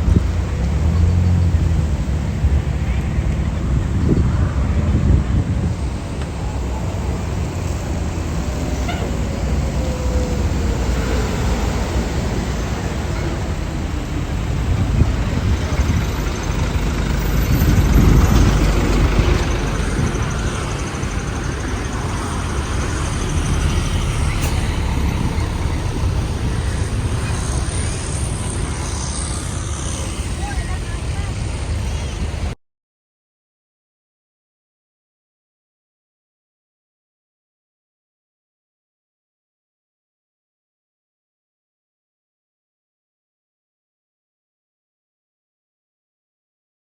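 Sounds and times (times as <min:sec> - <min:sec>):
road traffic: 0:00.0 - 0:32.6
vehicle engine noise: 0:00.0 - 0:32.6.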